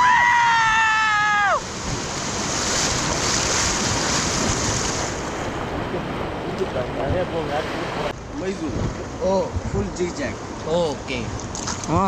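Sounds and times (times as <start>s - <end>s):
fast river water rushing: 0.0s - 12.0s
wind buffeting microphone: 1.6s - 10.6s.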